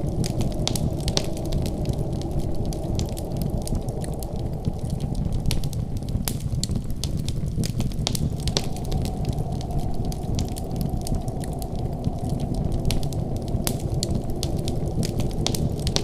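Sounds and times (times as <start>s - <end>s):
low rumble: 0.0s - 16.0s
wood fire crackling: 0.0s - 16.0s.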